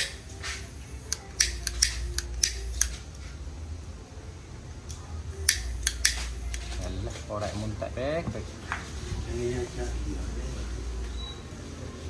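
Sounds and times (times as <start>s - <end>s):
lighter clicking: 1.1s - 3.0s, 4.9s - 6.6s.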